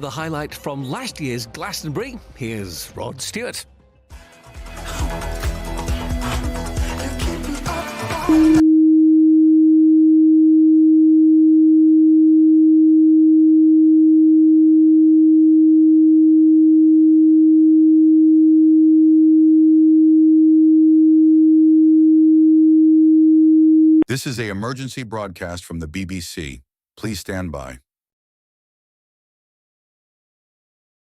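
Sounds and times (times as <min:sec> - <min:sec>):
music: 0:00.0 - 0:08.6.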